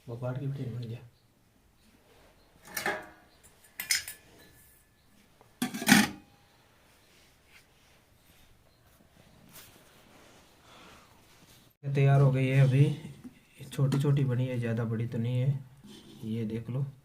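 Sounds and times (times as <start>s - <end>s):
dishes clattering: 2.6s - 4.7s, 5.6s - 6.3s.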